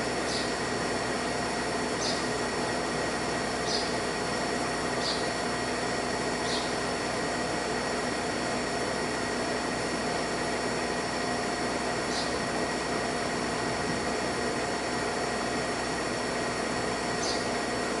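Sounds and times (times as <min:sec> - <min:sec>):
sparrow chirps: 0:00.3 - 0:00.5, 0:02.0 - 0:02.2, 0:03.6 - 0:04.0, 0:05.0 - 0:05.3, 0:06.4 - 0:06.8, 0:12.1 - 0:12.4, 0:17.2 - 0:17.5.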